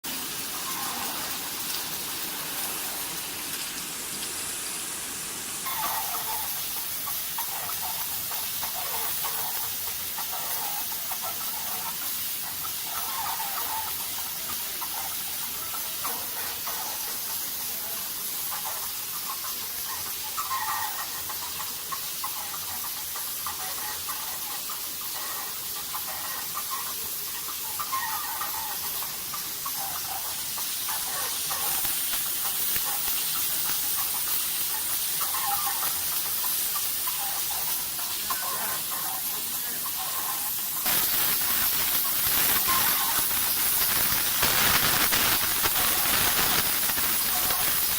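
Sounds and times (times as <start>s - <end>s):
machine hissing: 0.0s - 47.9s.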